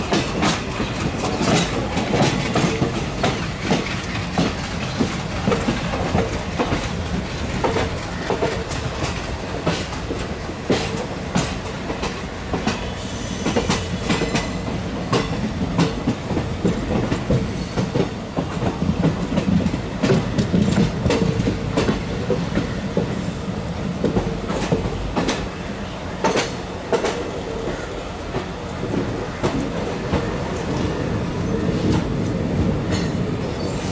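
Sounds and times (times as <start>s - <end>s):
train wheels clattering over rail joints: 0.0s - 25.6s, 26.2s - 33.9s
train rumble: 0.0s - 33.9s.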